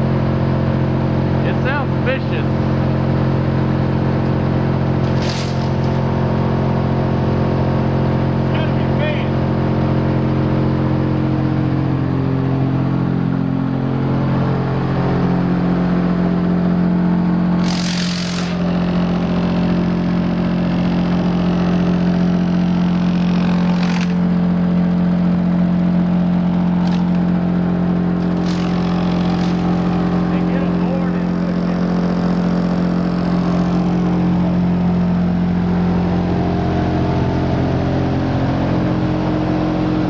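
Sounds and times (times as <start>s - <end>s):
wood chipper running: 0.0s - 40.0s
hissing bursts: 17.6s - 18.6s.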